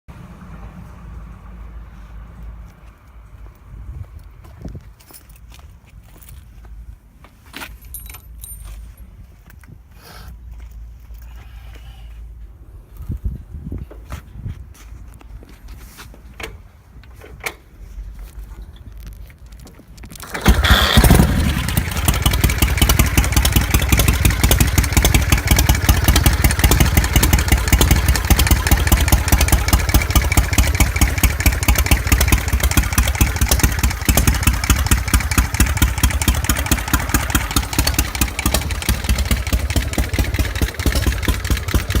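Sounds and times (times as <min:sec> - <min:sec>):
motorcycle kick-started: 0:20.0 - 0:42.0
motorcycle engine lumpy idle: 0:20.2 - 0:42.0.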